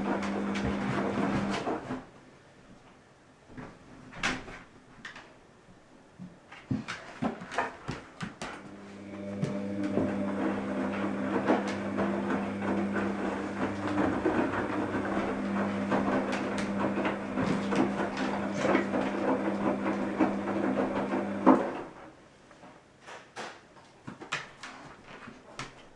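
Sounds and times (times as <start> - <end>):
washing machine running: 0.0 - 2.1, 8.5 - 22.1.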